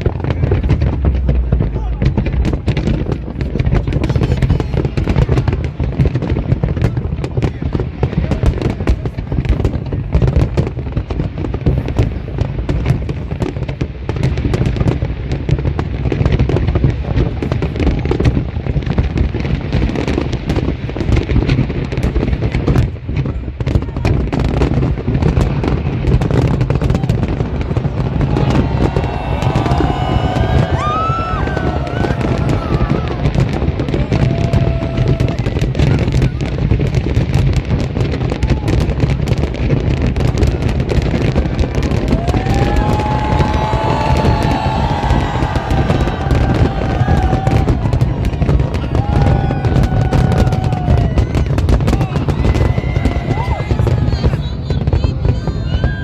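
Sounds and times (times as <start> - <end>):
low rumble: 0.0 - 3.6
fireworks bangs and crackles: 0.0 - 56.0.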